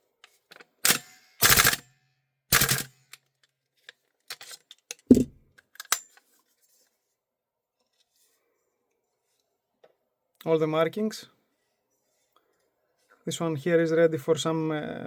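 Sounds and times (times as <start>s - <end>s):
dull knock: 5.1s - 5.4s.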